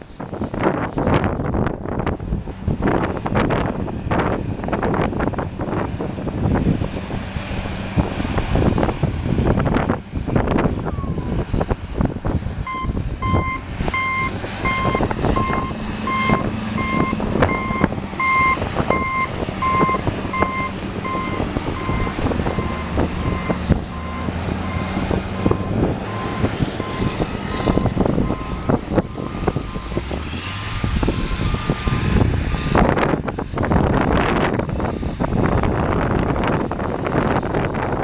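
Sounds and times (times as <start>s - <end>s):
tractor engine running: 0.0s - 38.0s
wind gusting on microphone: 0.0s - 38.0s
backup alarm beeping: 12.7s - 30.0s.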